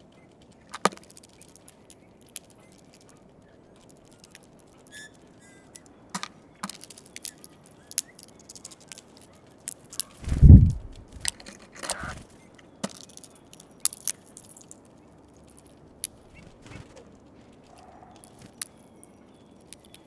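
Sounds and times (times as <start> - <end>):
birds cracking seeds: 0.0 - 20.0.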